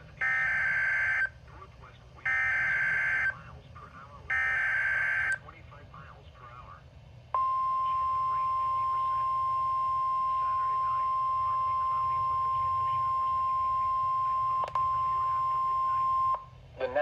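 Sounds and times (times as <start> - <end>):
steady high alarm tone: 0.2 - 1.4, 2.2 - 3.4, 4.3 - 5.4, 7.4 - 16.5.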